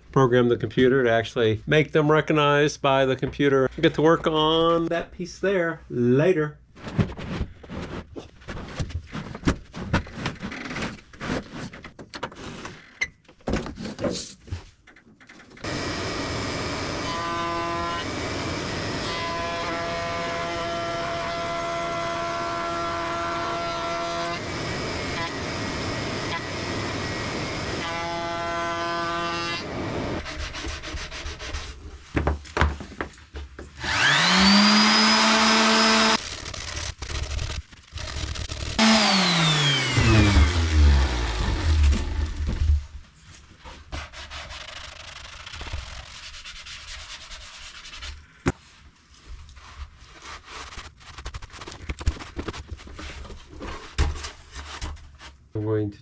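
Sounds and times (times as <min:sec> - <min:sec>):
power tool whining: 0:15.6 - 0:30.2, 0:33.8 - 0:42.8.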